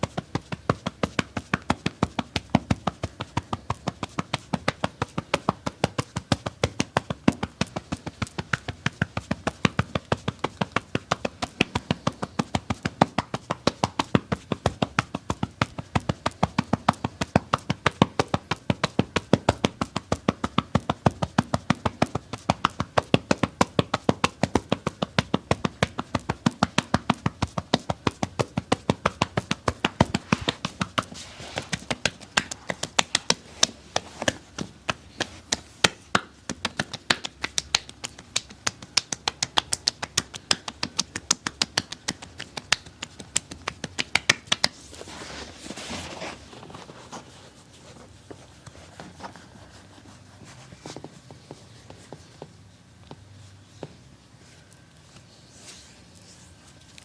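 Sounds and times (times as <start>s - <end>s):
hands tapping on body: 0.0s - 45.2s.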